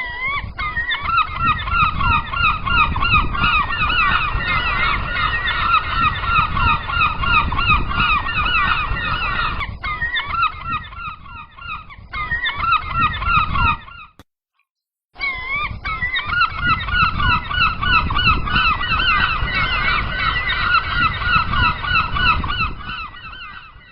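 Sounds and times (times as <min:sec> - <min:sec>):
gulls calling: 0:00.0 - 0:14.2, 0:15.2 - 0:23.9.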